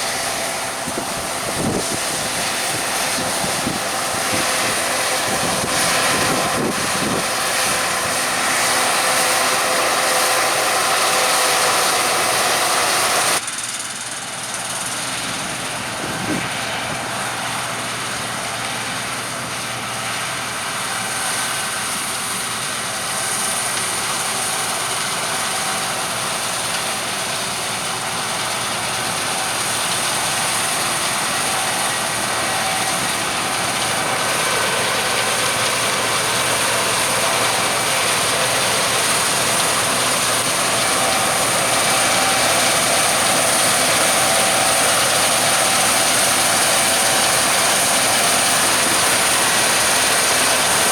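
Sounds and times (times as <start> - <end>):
combine harvester and tractors running: 0.0 - 50.9.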